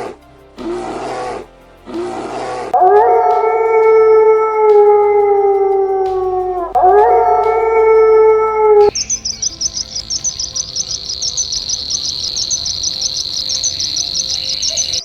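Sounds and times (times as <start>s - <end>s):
canid howling: 6.7s - 15.0s.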